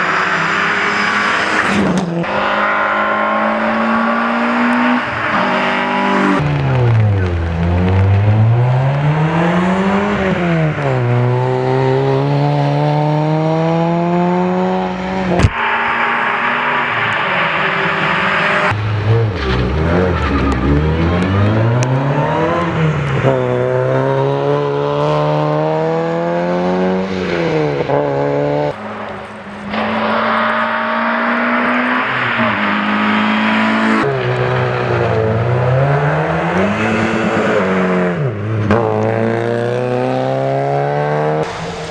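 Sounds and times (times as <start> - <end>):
rally car engines revving: 0.0 - 41.9
sharp crack: 15.3 - 21.9.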